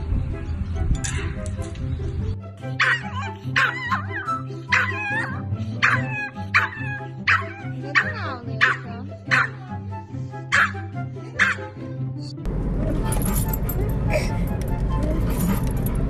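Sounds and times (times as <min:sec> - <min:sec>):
background music: 0:00.0 - 0:16.0
dog yipping and barking: 0:02.8 - 0:09.6, 0:10.5 - 0:10.8, 0:11.4 - 0:11.7.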